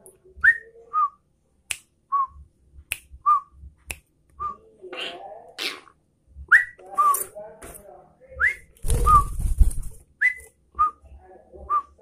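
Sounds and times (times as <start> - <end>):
rustling noise: 8.8 - 10.1.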